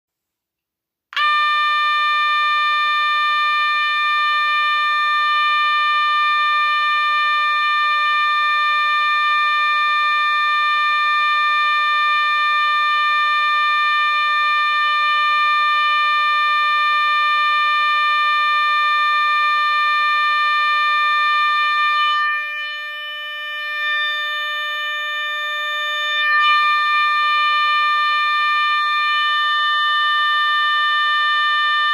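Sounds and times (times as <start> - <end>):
shrill fire alarm tone: 1.2 - 31.9.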